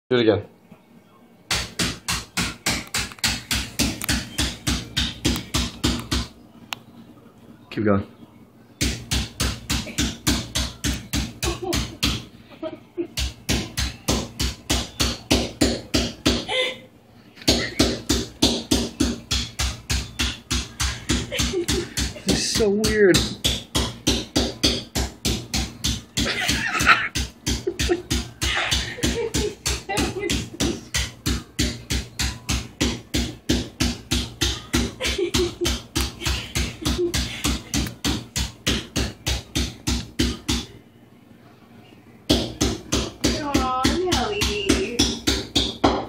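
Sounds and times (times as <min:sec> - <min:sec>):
rapid deep knocks: 0:01.5 - 0:06.4, 0:08.8 - 0:12.3, 0:17.5 - 0:40.8.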